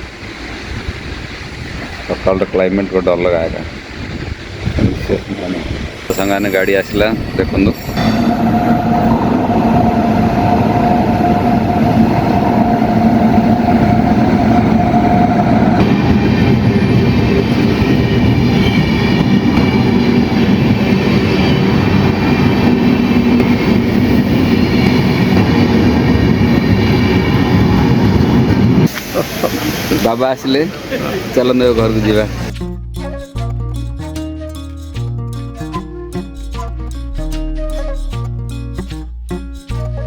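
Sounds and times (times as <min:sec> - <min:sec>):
train cars rumbling and rattling: 0:00.0 - 0:33.2
steady tone: 0:06.1 - 0:30.2.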